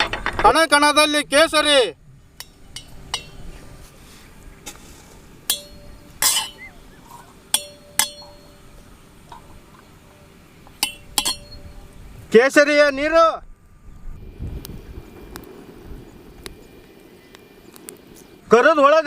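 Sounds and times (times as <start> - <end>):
utensils clinking on cookware: 2.4 - 3.4, 5.5 - 9.9, 10.8 - 11.8.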